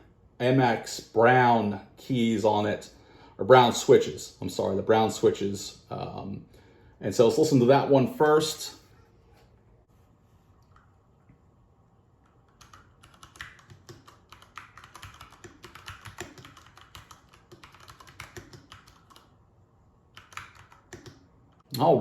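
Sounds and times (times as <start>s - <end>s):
mechanical keyboard typing: 12.4s - 19.3s, 20.1s - 21.6s.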